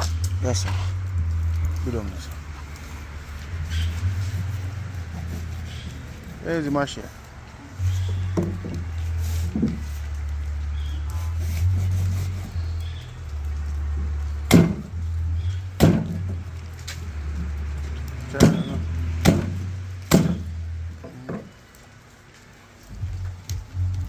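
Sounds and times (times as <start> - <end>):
steady low rumble: 0.0 - 21.0, 22.8 - 24.0
machete chopping fish: 14.5 - 14.9, 15.8 - 16.2, 18.4 - 20.5.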